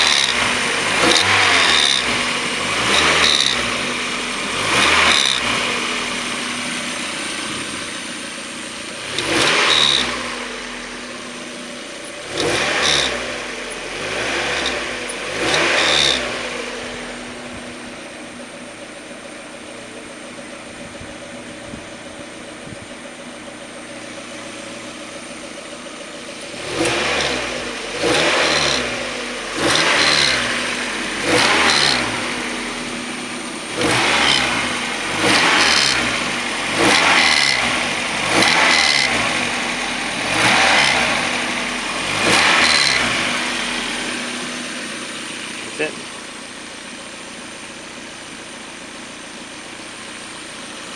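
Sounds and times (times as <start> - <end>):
rotating noise from engine: 0.0 - 16.6, 29.6 - 32.6
car engine revving from idle: 0.0 - 50.9.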